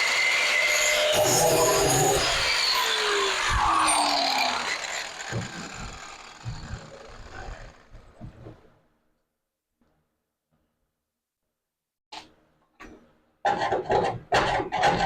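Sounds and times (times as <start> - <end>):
power tool grinding metal: 0.0 - 8.1
motor winding down whine: 0.4 - 8.0.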